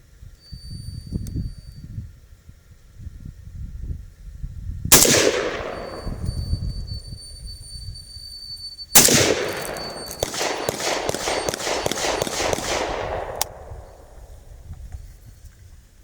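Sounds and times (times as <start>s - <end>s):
gunshots: 4.9s - 6.5s, 9.0s - 14.4s.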